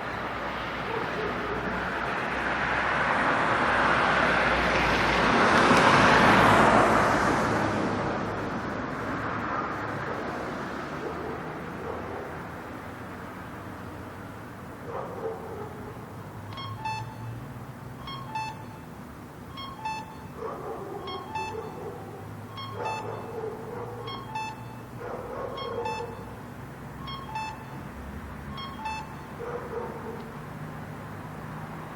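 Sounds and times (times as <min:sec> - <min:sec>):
street traffic: 0:00.0 - 0:31.9
traffic light signal beeping: 0:16.4 - 0:30.4.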